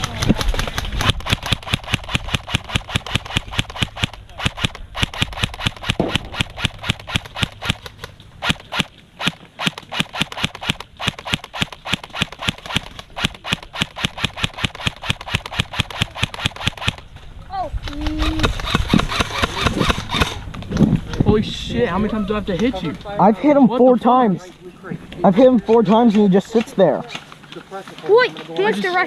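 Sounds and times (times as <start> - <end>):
airsoft guns firing rapidly: 0.0 - 17.0, 18.0 - 20.4.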